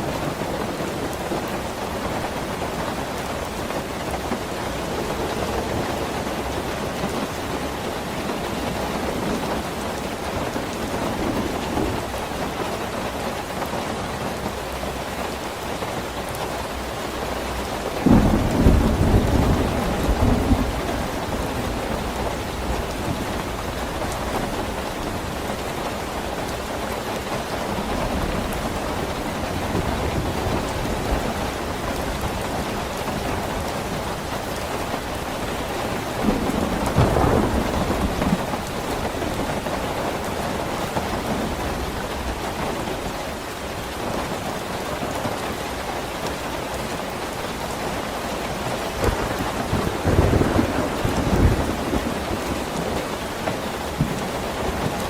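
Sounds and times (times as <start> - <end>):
steady rain falling: 0.0 - 55.0
thunder clap rumbling: 3.9 - 13.1, 17.8 - 43.2, 48.7 - 55.0.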